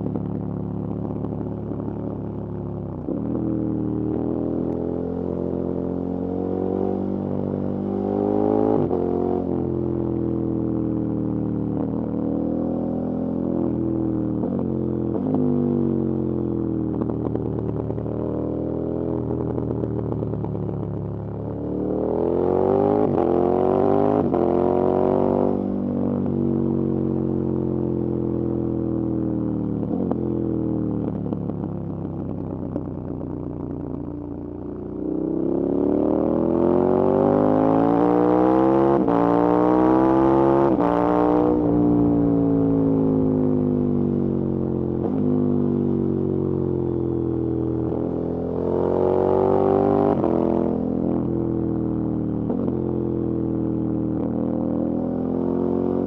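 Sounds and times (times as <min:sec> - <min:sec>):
motorcycle engine revving: 0:34.9 - 0:56.0.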